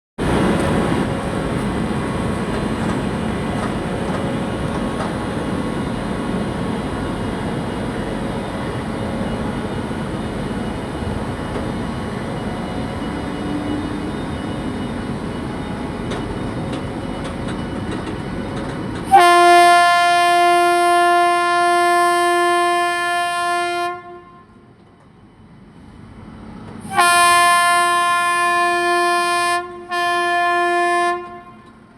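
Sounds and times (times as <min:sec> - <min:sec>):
train rumbling: 0:00.2 - 0:31.9
locomotive horn blasts: 0:19.1 - 0:24.7, 0:26.9 - 0:31.7.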